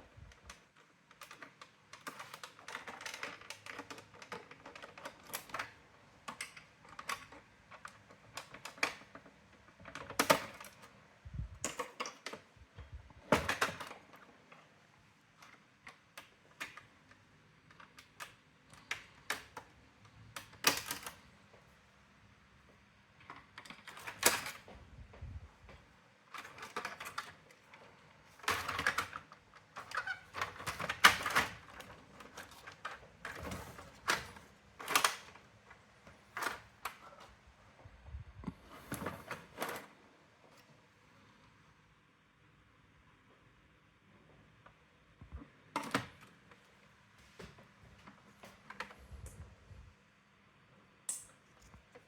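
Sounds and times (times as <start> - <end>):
typewriter parts clicking and rattling: 0.7 - 9.2, 26.3 - 35.4.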